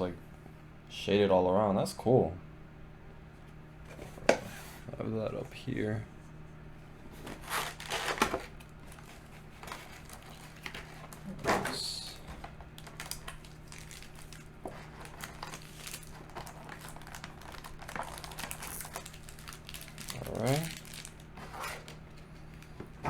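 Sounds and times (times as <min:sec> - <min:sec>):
plastic and foil packaging crinkling: 0:07.2 - 0:22.8.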